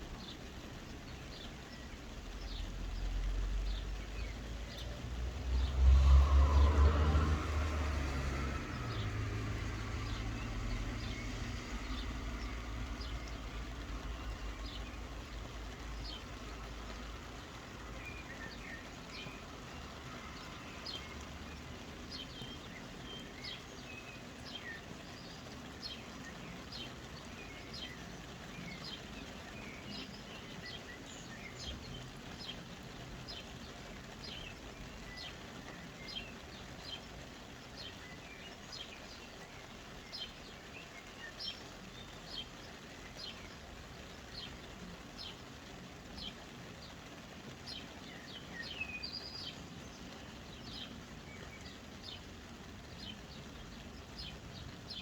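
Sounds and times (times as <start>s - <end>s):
soft rain hiss: 0.0s - 55.0s
passing vehicle rumble: 2.2s - 25.6s
birds chirping: 5.6s - 55.0s.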